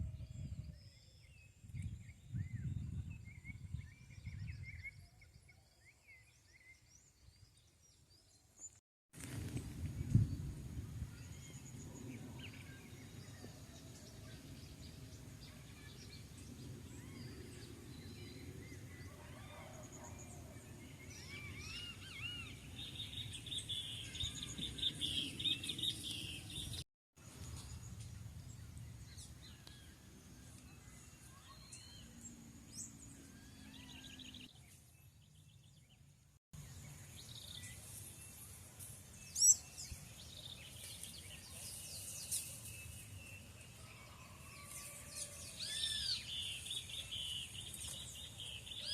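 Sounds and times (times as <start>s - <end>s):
birds chirping and singing: 11.1s - 26.8s, 27.6s - 48.9s.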